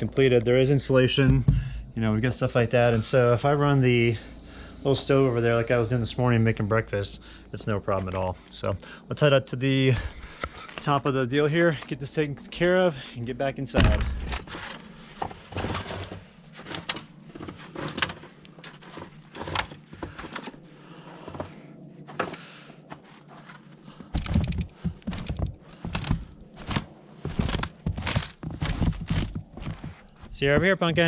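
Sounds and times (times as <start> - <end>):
heavy thumps: 1.2 - 2.1, 13.8 - 14.6, 24.0 - 31.0.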